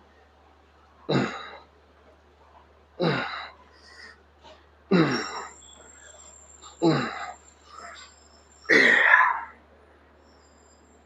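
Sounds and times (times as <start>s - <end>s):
man grunting with effort: 6.8s - 7.3s.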